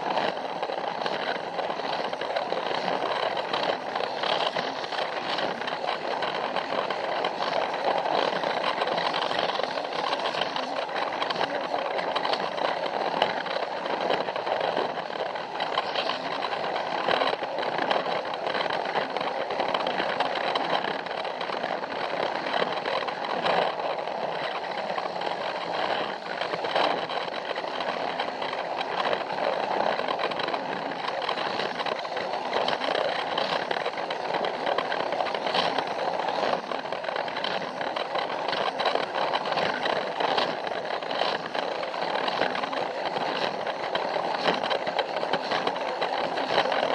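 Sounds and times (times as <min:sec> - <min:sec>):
toy train motor whirring: 0:00.0 - 0:46.9
wheels clicking over track joints: 0:00.0 - 0:46.9.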